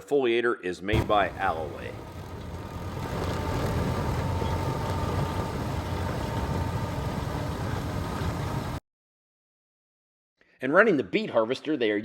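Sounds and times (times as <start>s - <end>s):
steady machine whine: 1.0s - 8.8s
tractor engine running: 1.0s - 8.8s.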